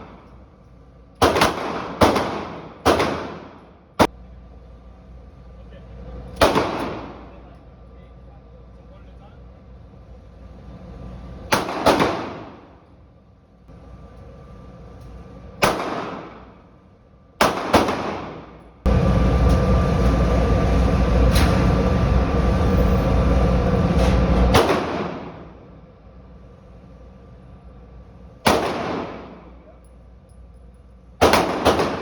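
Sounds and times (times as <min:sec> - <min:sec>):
loud steady rumbling noise: 0:00.0 - 0:32.0
pistol shots echoing: 0:01.2 - 0:03.6, 0:06.4 - 0:07.3, 0:11.5 - 0:12.7, 0:15.6 - 0:16.5, 0:17.4 - 0:18.6, 0:24.6 - 0:25.5, 0:28.5 - 0:29.5, 0:31.2 - 0:32.0.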